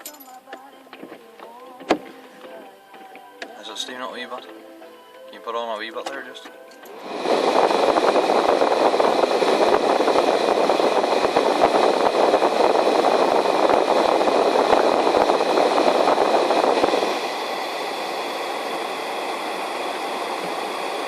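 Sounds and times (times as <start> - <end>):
car heater blower fan: 5.4 - 21.0.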